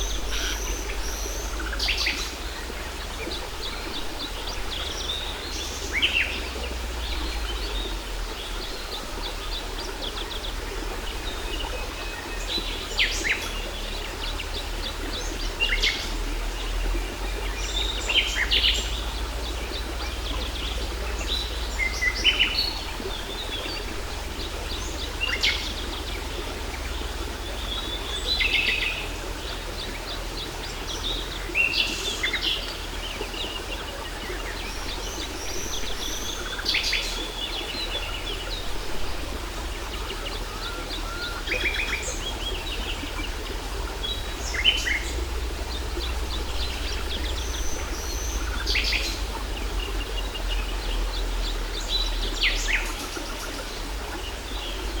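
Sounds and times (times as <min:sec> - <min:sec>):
waterfall rushing: 0:19.8 - 0:50.6.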